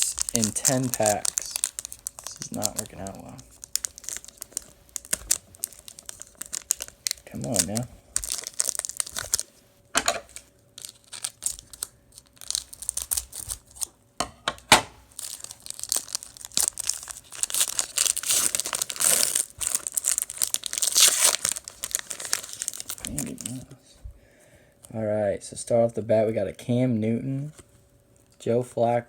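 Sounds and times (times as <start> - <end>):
wrapper crinkling and tearing: 0.0 - 13.9, 15.1 - 23.8
wrapper snap: 0.0 - 13.9.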